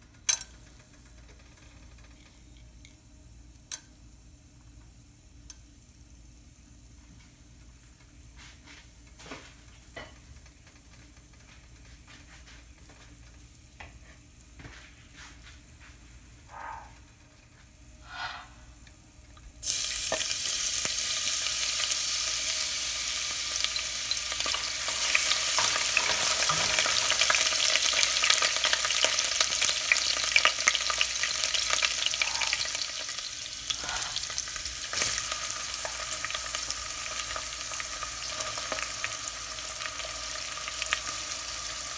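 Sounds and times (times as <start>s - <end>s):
food sizzling in hot oil: 19.6s - 41.9s.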